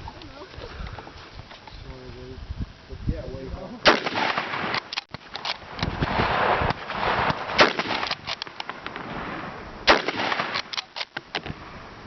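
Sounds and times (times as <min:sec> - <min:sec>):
rifle shot: 0:03.8 - 0:11.6
gun handling clicks: 0:03.9 - 0:05.9, 0:07.6 - 0:09.0, 0:09.9 - 0:11.5.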